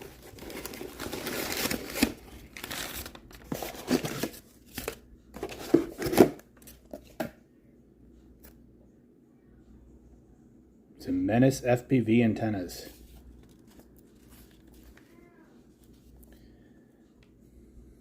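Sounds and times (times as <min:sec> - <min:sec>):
packaging crinkling: 0:00.0 - 0:05.6.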